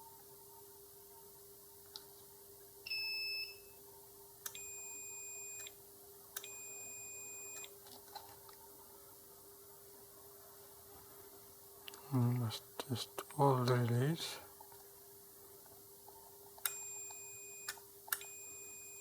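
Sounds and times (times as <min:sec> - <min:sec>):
multimeter continuity beeps: 0:04.5 - 0:05.8, 0:06.4 - 0:07.7, 0:16.6 - 0:19.0.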